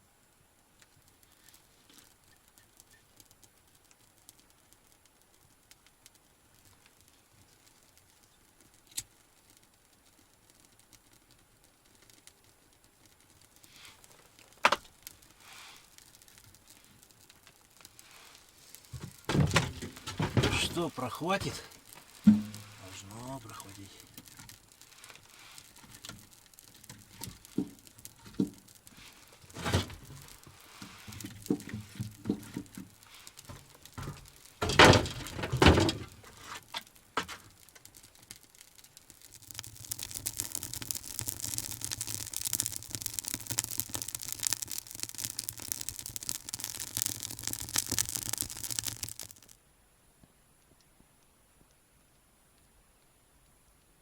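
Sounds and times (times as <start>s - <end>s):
kindling crackling: 13.0s - 31.8s, 37.9s - 49.6s
firewood knocking and clattering: 19.0s - 20.8s, 22.2s - 22.8s, 39.2s - 49.5s.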